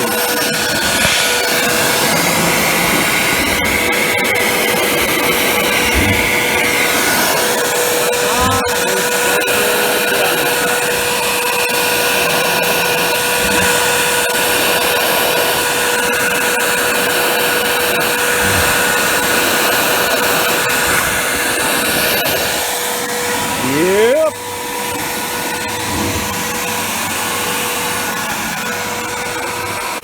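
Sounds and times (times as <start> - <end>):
router spindle whine: 0.0 - 30.0
machine rushing noise: 17.2 - 22.6, 25.4 - 27.7.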